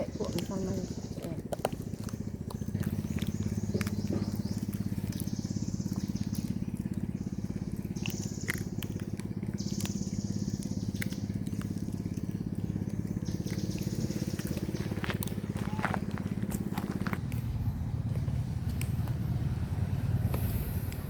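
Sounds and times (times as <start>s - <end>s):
small engine running: 0.0s - 21.0s.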